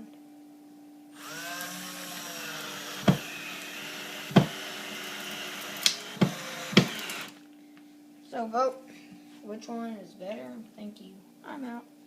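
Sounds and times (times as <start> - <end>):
electric drill running: 1.2 - 7.4
sharp clicks: 5.6 - 7.4.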